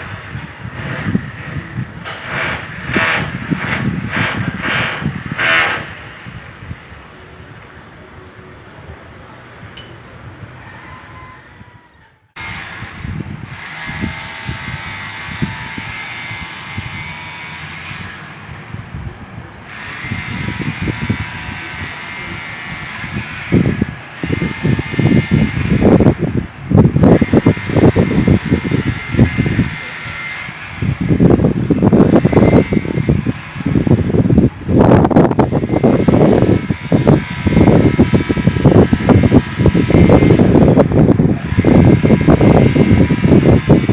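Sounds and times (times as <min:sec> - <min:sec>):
demolition hammer breaking concrete: 0:00.4 - 0:06.1.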